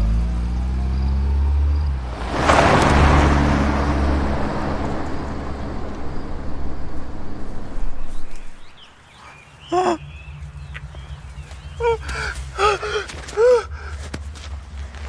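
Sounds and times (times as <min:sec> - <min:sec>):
car driving off: 0:00.0 - 0:08.8.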